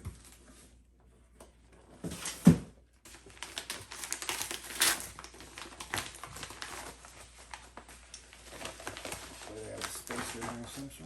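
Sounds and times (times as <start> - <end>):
bubble wrap crinkling: 3.1 - 11.0.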